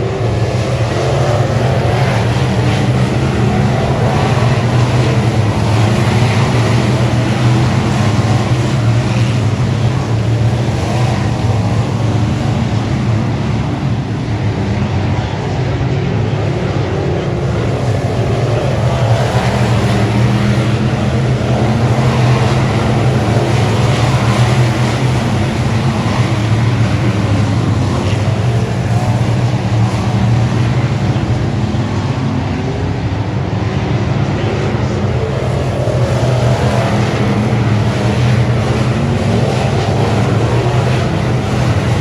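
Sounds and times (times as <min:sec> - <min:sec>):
race car engine running hard: 0:00.0 - 0:42.0.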